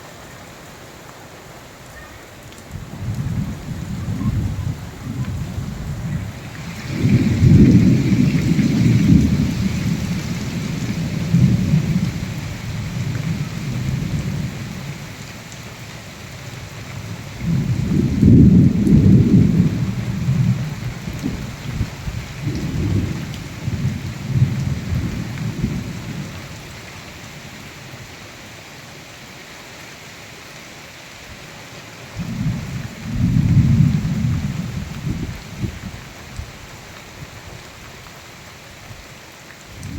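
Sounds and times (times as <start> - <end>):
rain hiss: 0.0 - 39.9
thunder rumbling: 2.8 - 15.2, 16.6 - 26.7, 32.2 - 36.0.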